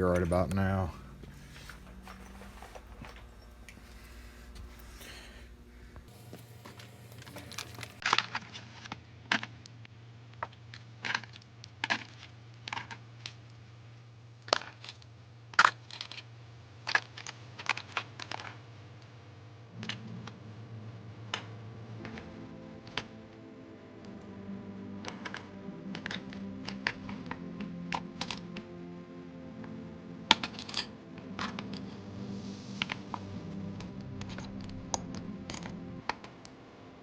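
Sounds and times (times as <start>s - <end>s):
steady low hum: 0.0s - 8.0s, 19.2s - 37.0s
faint music: 0.0s - 10.4s, 18.4s - 37.0s.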